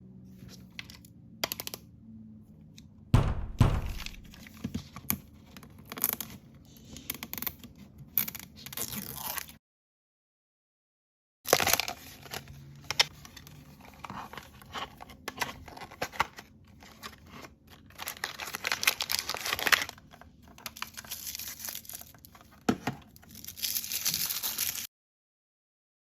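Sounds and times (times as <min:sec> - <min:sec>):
packaging crinkling: 0:15.4 - 0:24.9
packaging tearing: 0:17.8 - 0:20.0, 0:23.2 - 0:24.9.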